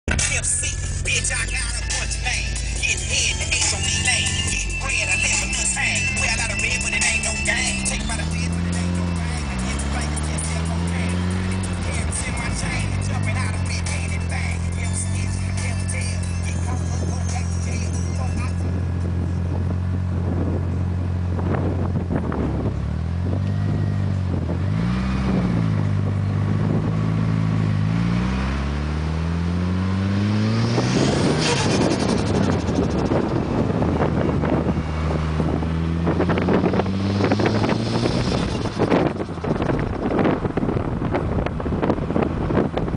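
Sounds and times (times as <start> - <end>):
car engine running: 0.0 - 42.9
wind buffeting microphone: 18.7 - 27.2, 30.6 - 42.9.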